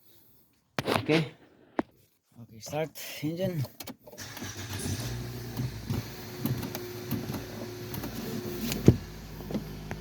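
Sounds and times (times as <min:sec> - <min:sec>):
engine clicks: 0:03.5 - 0:08.8
car engine idling: 0:04.2 - 0:10.0.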